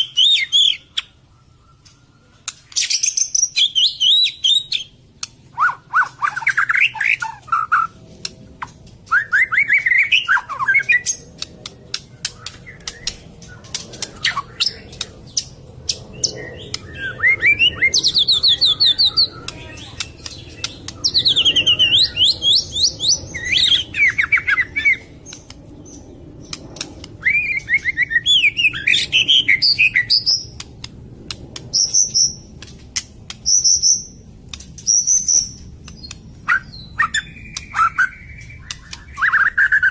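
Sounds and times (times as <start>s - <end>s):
bird singing fast repeated notes: 0.0s - 7.9s, 9.1s - 32.5s, 34.8s - 39.9s
sharp clicks: 11.1s - 16.9s, 19.3s - 21.5s, 25.2s - 27.2s, 38.4s - 39.2s.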